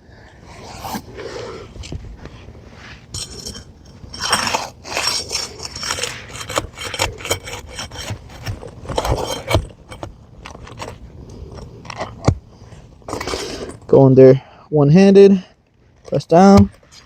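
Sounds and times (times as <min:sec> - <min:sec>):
metal tool scraping shingles: 0:02.9 - 0:12.4.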